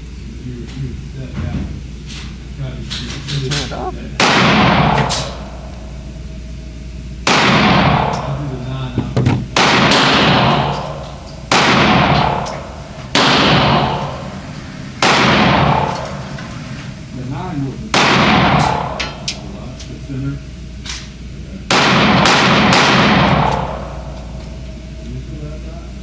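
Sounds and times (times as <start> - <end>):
pistol shots echoing: 21.7 - 24.0.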